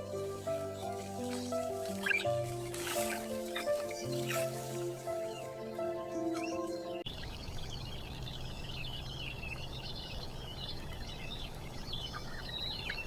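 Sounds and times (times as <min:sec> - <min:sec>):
music: 0:00.0 - 0:07.1
small birds chirping: 0:00.0 - 0:13.0.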